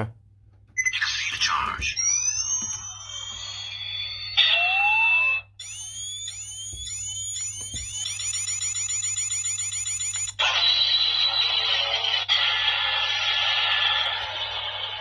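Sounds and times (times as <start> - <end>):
rising electronic chirps: 0.8 - 10.4.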